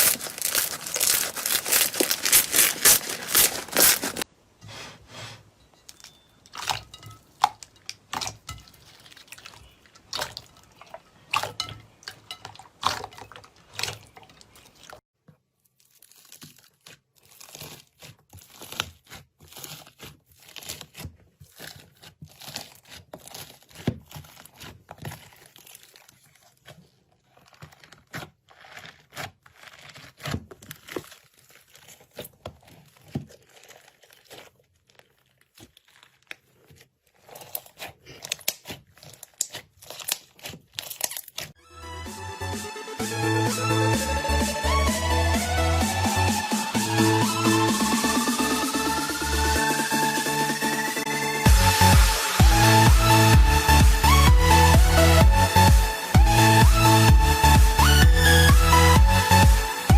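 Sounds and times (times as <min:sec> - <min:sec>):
slime crackling and popping: 0:00.0 - 0:04.3, 0:15.6 - 0:41.6.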